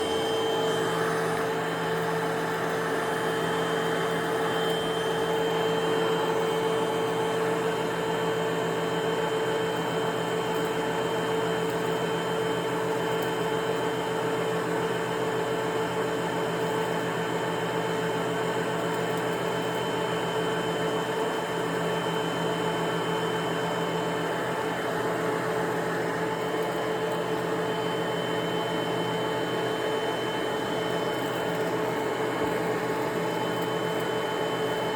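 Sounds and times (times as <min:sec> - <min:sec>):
vacuum cleaner running: 0:00.0 - 0:11.5, 0:19.8 - 0:34.9.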